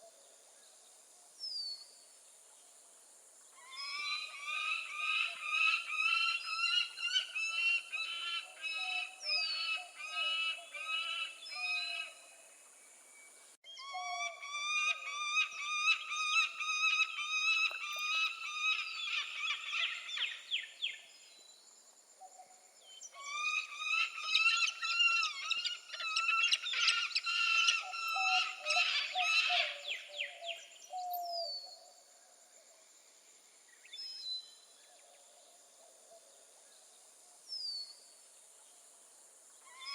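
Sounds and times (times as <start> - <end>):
falcon calling harshly: 23.2 - 29.8.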